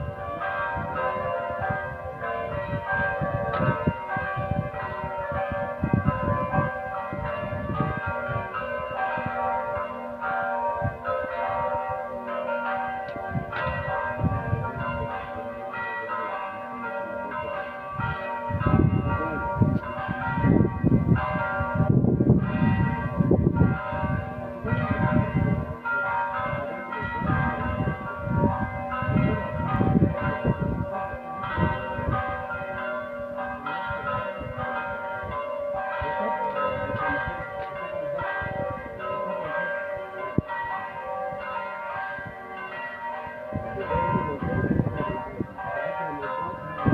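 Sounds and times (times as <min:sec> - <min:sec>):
electronic church bell tolling: 0:00.0 - 0:46.9.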